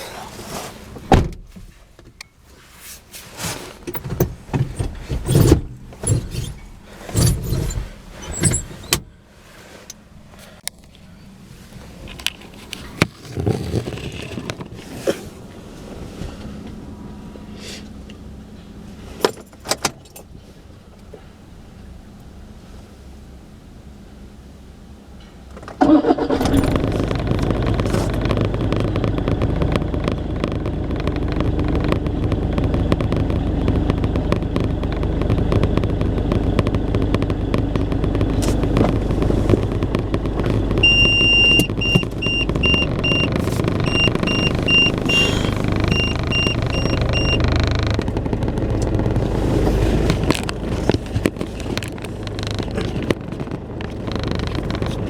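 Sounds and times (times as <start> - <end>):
vehicle engine running: 20.2 - 55.0
short electronic beeps: 40.8 - 47.5.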